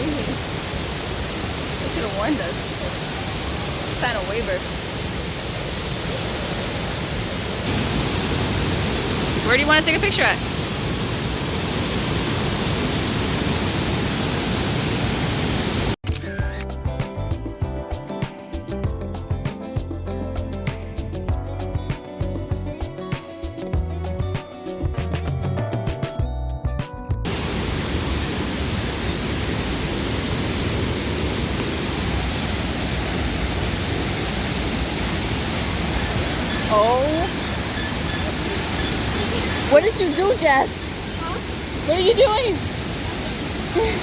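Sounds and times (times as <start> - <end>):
waterfall rushing: 0.0 - 16.0, 27.3 - 44.0
background music: 16.0 - 27.2.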